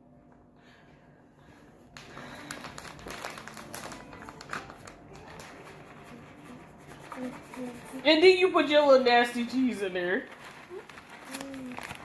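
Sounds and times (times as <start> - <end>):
crackly rustling: 1.9 - 12.0.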